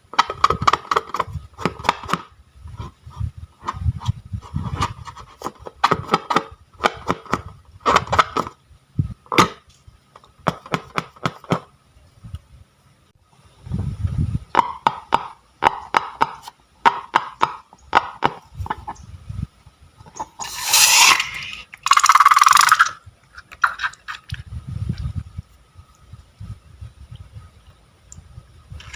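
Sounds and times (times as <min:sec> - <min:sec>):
noisy slime bursts: 0:20.4 - 0:22.9.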